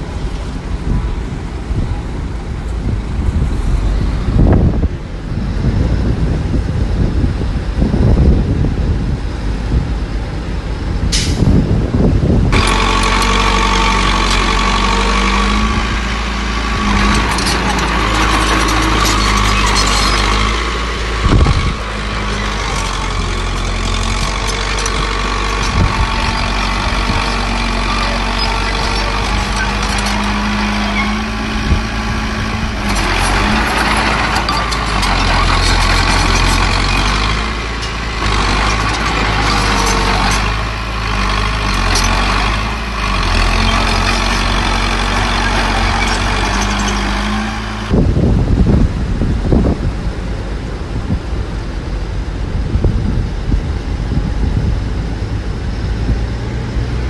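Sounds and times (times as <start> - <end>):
diesel engine hum: 0.0 - 57.0
metal knocks and clanks: 16.6 - 20.6, 32.8 - 40.6.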